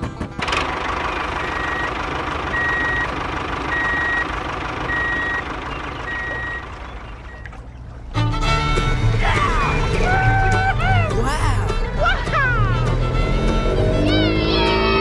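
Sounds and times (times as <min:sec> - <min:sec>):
reversing alarm beeping: 0:01.4 - 0:07.6.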